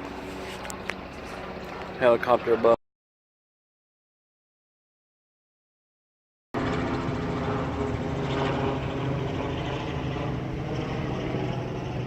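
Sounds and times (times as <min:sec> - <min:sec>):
helicopter rotor drone: 0:00.0 - 0:02.8, 0:06.6 - 0:12.0.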